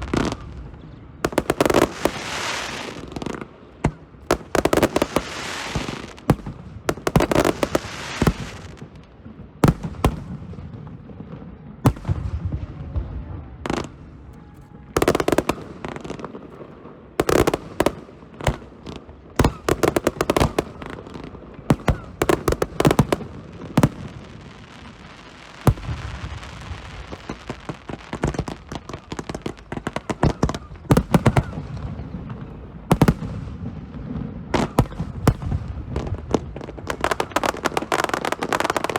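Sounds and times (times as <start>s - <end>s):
fireworks bangs and crackling: 0.0s - 38.9s
echoing booms: 3.8s - 24.5s, 25.7s - 27.4s, 30.1s - 37.8s.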